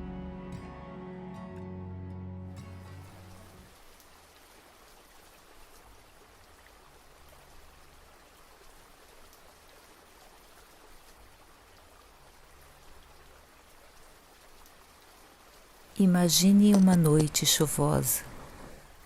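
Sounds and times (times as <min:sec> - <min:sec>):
soft music: 0:00.0 - 0:03.7
steady gentle rain: 0:02.5 - 0:19.0.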